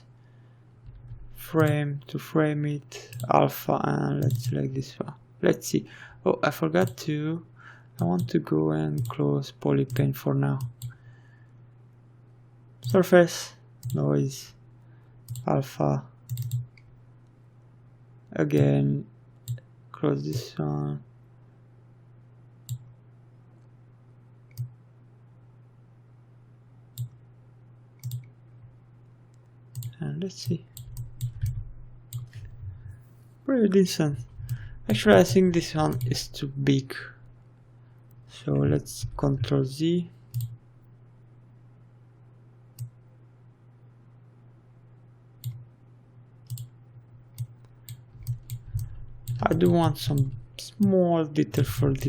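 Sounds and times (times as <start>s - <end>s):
low electrical hum: 0.0s - 52.0s
computer mouse clicks: 3.1s - 3.3s, 4.2s - 4.6s, 6.8s - 7.0s, 9.0s - 9.2s, 9.9s - 11.0s, 12.8s - 13.0s, 13.8s - 14.0s, 15.3s - 15.5s, 16.3s - 16.9s, 22.6s - 22.9s, 24.5s - 24.8s, 26.9s - 27.2s, 28.0s - 28.4s, 29.3s - 33.3s, 34.2s - 36.3s, 40.3s - 40.6s, 45.4s - 45.6s, 46.4s - 46.7s, 47.3s - 50.9s.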